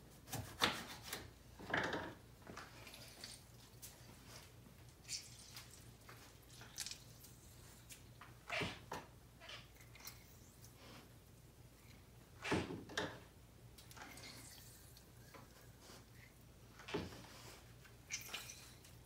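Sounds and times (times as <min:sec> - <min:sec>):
lemon squishing: 0:05.0 - 0:08.1.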